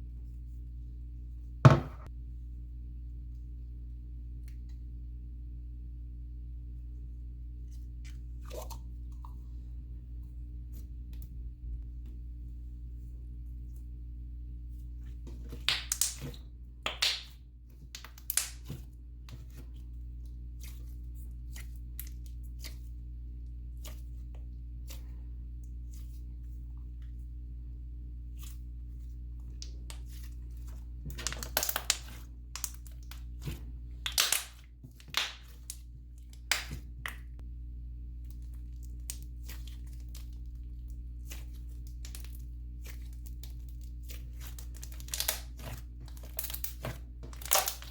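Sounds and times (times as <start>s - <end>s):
steady low hum: 0.0s - 47.9s
slime stretching and tearing: 38.3s - 47.9s.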